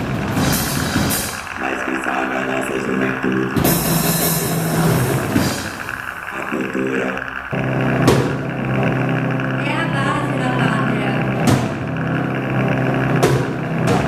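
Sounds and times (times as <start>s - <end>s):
low drone: 0.0s - 14.0s
sharp electronic hits: 0.0s - 14.0s
warbling processed sample: 0.0s - 14.0s.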